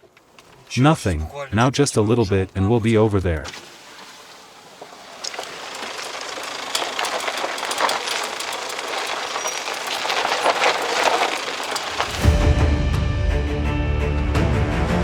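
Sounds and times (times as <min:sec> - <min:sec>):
tyres crunching over gravel: 0:00.0 - 0:12.6
vehicle rattles and knocks: 0:04.2 - 0:12.6.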